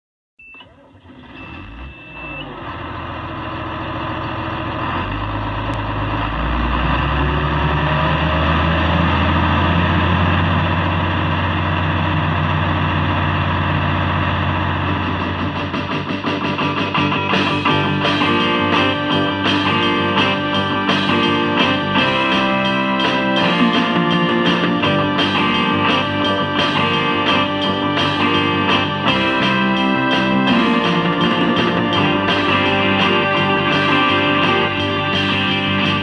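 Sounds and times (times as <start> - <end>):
diesel engine throttling up: 0.6 - 36.0
high electronic beep: 1.4 - 2.5.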